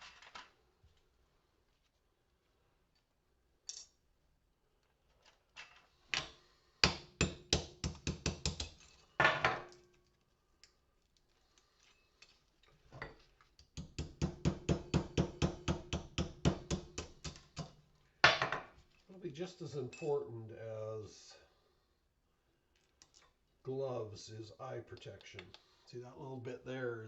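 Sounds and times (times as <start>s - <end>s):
rapid hammer blows on porcelain: 13.8s - 17.7s.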